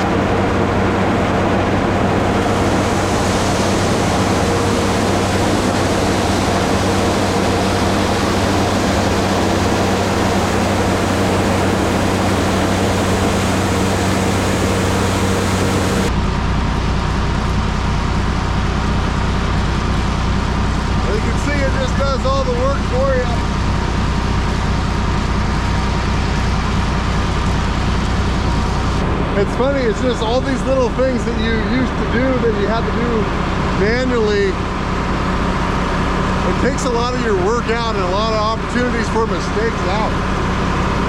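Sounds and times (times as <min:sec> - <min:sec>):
loud rushing noise: 0:00.0 - 0:16.8
deep hum: 0:00.0 - 0:41.0
engine hum: 0:00.0 - 0:41.0.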